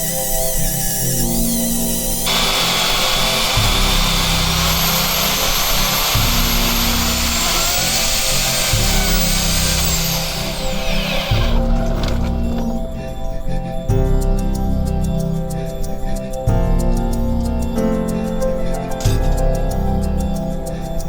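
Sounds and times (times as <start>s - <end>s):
background music: 0.0s - 21.0s
electric chainsaw whining: 0.6s - 12.7s.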